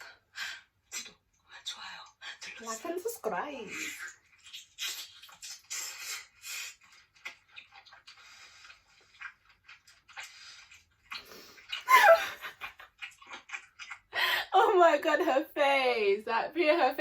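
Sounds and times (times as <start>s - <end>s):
wet chewing and smacking: 3.7s - 14.2s.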